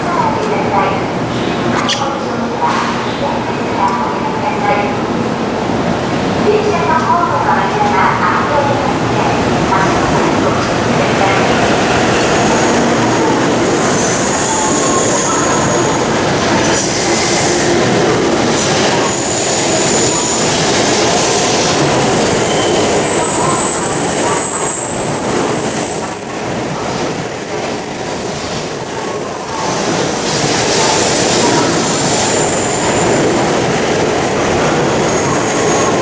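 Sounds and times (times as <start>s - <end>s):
train rushing past: 0.0s - 36.0s
high squeals of wheels and brakes: 22.2s - 26.7s.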